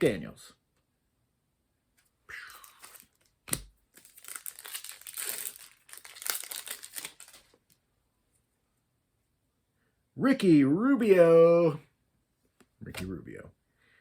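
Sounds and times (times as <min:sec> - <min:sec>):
wrapper crinkling: 0:02.5 - 0:07.8
wrapper sharp snap: 0:02.6 - 0:07.8.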